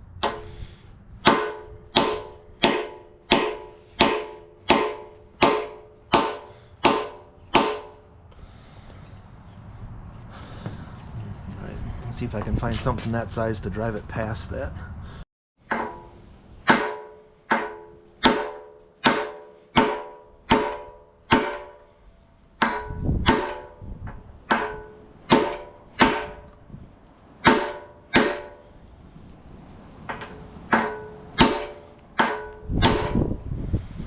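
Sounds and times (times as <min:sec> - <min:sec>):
hammer clanging on steel: 0:00.2 - 0:08.1, 0:15.6 - 0:26.6, 0:27.4 - 0:28.8, 0:30.0 - 0:33.4.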